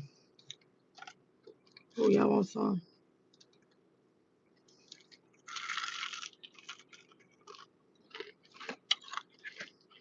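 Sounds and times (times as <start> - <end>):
crunchy bite of fried chicken: 4.9 - 10.0.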